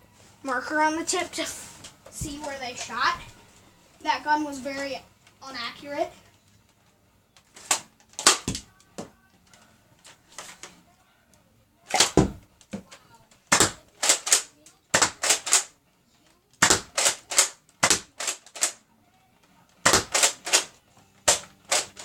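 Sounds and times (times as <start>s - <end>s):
sharp clicks: 16.6s - 18.8s.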